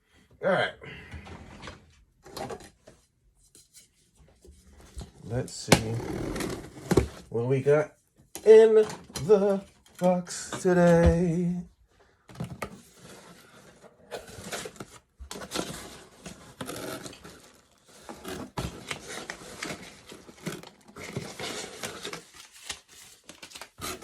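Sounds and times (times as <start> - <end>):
tape tearing and rustling: 13.0 - 24.0.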